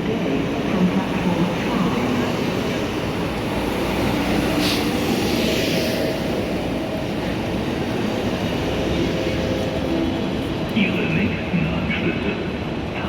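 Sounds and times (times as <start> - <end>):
train rumbling: 0.0 - 13.0
air hiss: 4.6 - 5.1.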